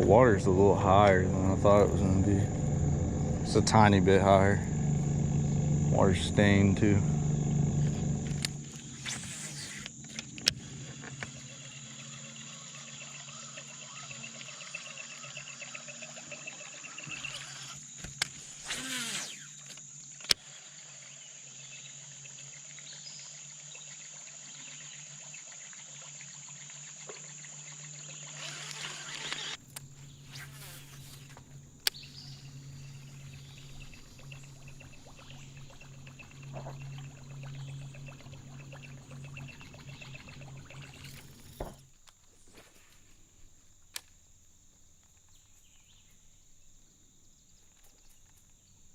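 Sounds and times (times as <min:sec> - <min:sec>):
low hum: 0:00.0 - 0:17.8, 0:28.1 - 0:45.8
insects buzzing: 0:00.0 - 0:48.9
sharp clicks: 0:28.4 - 0:30.0.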